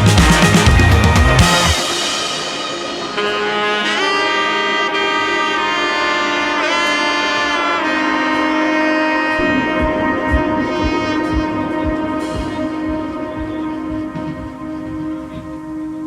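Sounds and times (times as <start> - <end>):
heavy beat: 0.0 - 4.2, 9.4 - 16.0.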